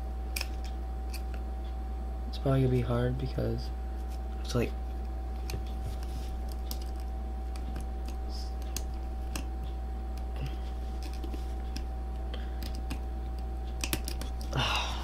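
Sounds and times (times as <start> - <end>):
faint steady whine: 0.0 - 15.0
low electrical hum: 0.0 - 15.0
small plastic parts clicking: 13.8 - 14.5.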